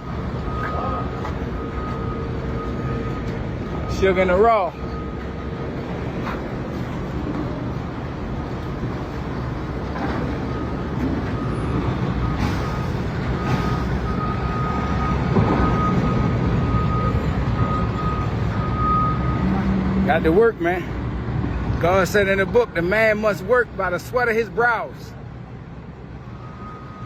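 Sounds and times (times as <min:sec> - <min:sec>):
reversing alarm beeping: 0:00.0 - 0:07.2, 0:09.0 - 0:20.6, 0:26.2 - 0:27.0
heavy machine engine running: 0:00.0 - 0:20.1.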